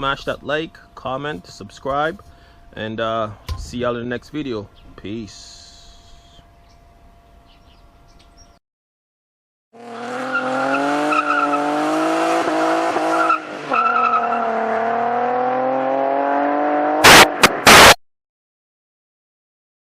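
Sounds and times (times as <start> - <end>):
car engine at high revs: 9.8 - 18.0
loud distorted bursts: 17.0 - 18.0.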